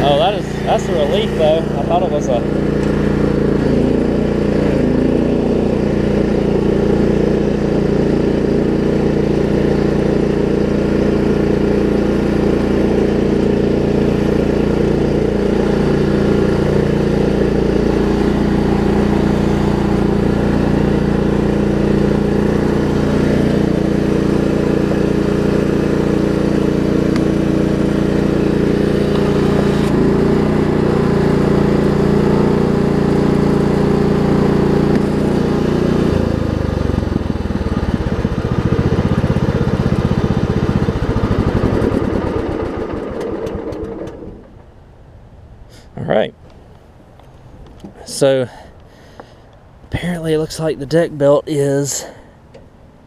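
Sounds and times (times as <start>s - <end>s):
riding mower engine running: 0.0s - 53.0s.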